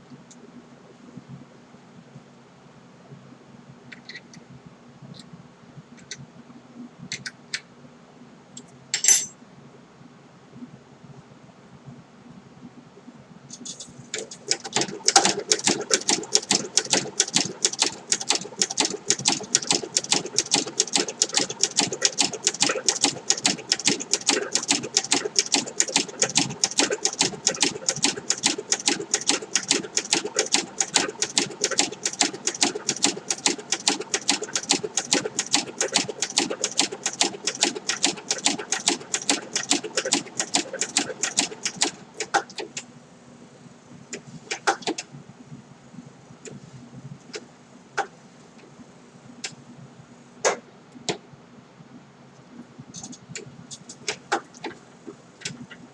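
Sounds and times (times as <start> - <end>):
sewing machine stitching leather: 13.6 - 42.8.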